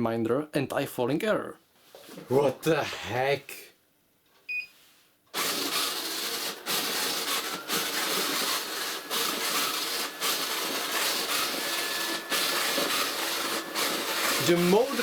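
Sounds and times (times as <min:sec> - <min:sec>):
robot vacuum motors running: 0:05.4 - 0:15.0.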